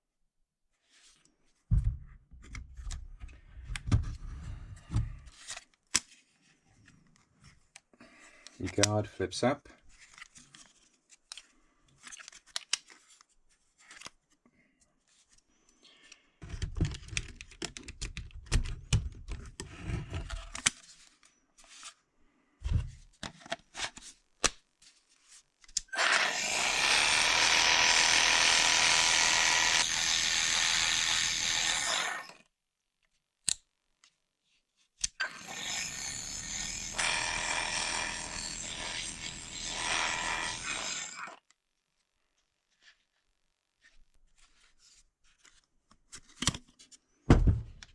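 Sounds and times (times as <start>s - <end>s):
plastic clicks and handling knocks: 16.4s - 20.8s
jigsaw motor running: 25.9s - 32.4s, 35.2s - 41.4s.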